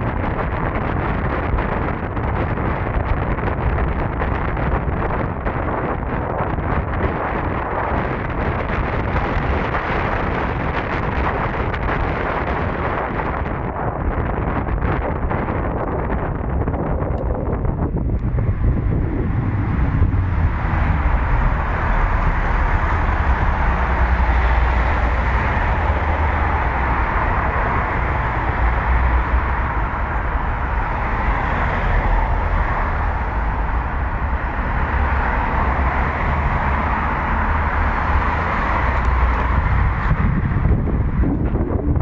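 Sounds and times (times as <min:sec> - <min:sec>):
road and tyre noise: 0:00.0 - 0:42.0
wind buffeting microphone: 0:00.0 - 0:42.0.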